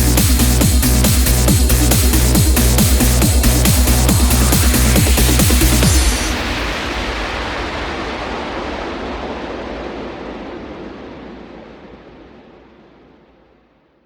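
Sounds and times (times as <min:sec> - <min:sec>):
hissing synth sweep: 0:00.0 - 0:06.8
low rumble: 0:00.0 - 0:13.0.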